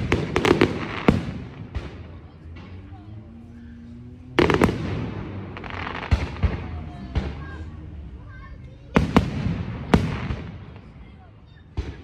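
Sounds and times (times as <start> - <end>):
fireworks bangs: 0.0 - 12.0
fireworks crackling: 0.0 - 12.0.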